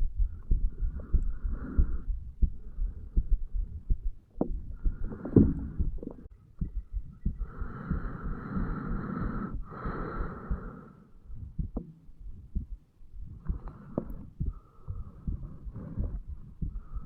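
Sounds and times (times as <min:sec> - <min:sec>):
heartbeat thuds: 0:00.0 - 0:17.0
breathing through stethoscope: 0:00.3 - 0:03.4, 0:04.7 - 0:06.3, 0:07.3 - 0:11.6, 0:13.3 - 0:17.0.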